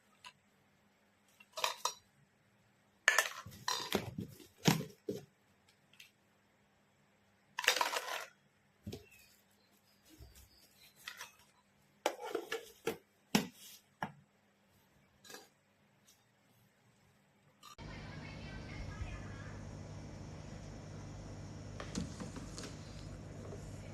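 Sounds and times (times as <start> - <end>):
faint steady hum: 15.8 - 23.9.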